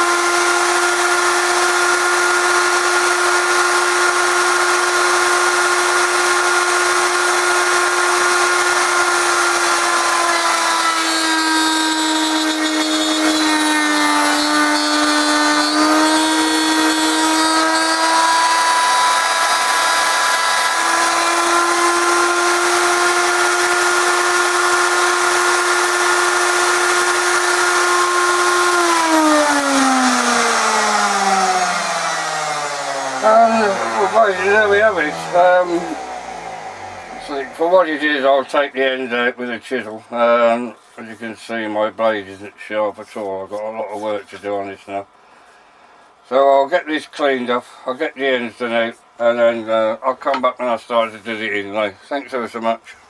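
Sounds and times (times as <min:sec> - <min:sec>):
router spinning down: 0:00.0 - 0:38.0
router whining: 0:00.0 - 0:38.1
router cutting into wood: 0:00.0 - 0:38.2.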